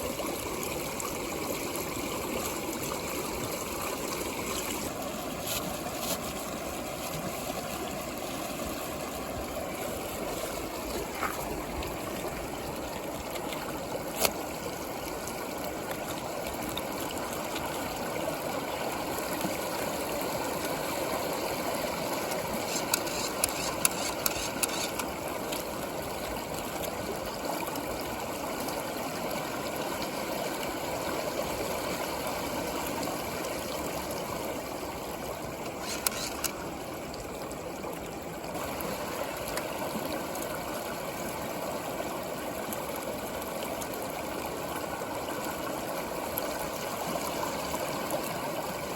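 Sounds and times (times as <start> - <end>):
water whirling in a tube: 0.0 - 48.9
sharp clicks: 22.6 - 25.1, 35.8 - 36.6.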